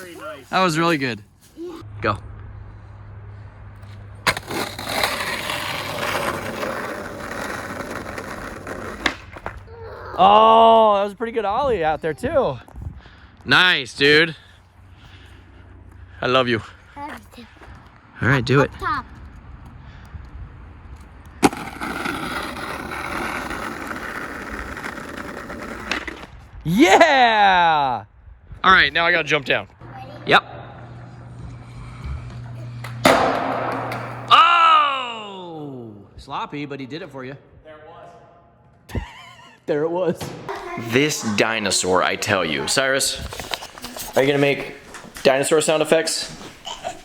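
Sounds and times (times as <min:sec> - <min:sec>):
skateboard clack: 0:04.2 - 0:09.6, 0:21.4 - 0:26.3, 0:32.7 - 0:34.4
skateboard wheels rolling on rough ground: 0:04.2 - 0:09.7, 0:21.4 - 0:26.6.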